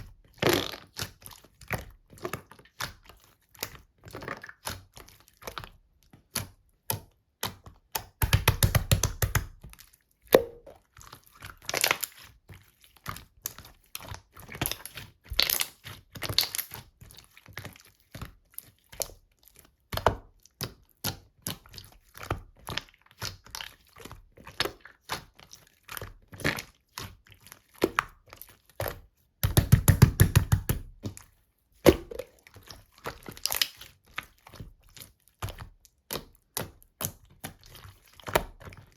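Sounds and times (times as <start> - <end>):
slime squeezed wet pops: 8.1 - 9.6, 10.3 - 10.8, 31.8 - 32.4.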